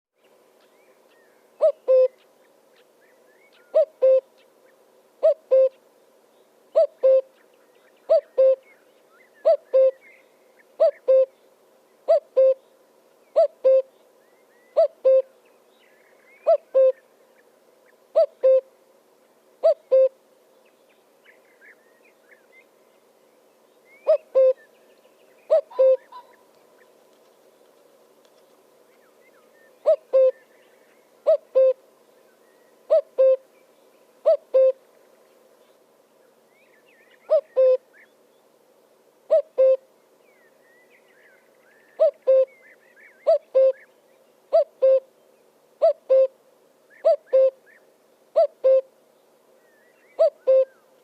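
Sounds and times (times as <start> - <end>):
bird hooting: 0.6 - 2.8, 3.4 - 4.5, 5.2 - 5.8, 6.7 - 7.4, 8.0 - 11.4, 12.0 - 12.7, 13.3 - 15.3, 16.2 - 17.1, 18.1 - 18.7, 19.6 - 20.2, 23.9 - 24.7, 25.4 - 26.9, 29.3 - 31.8, 32.8 - 33.5, 34.2 - 34.8, 37.0 - 38.1, 39.3 - 39.9, 40.7 - 43.9, 44.5 - 45.1, 45.8 - 48.9, 49.7 - 50.9.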